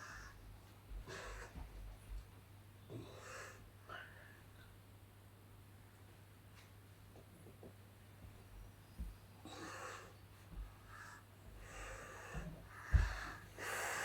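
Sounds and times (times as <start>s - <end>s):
low electrical hum: 0.0s - 14.0s
person breathing: 10.8s - 14.0s.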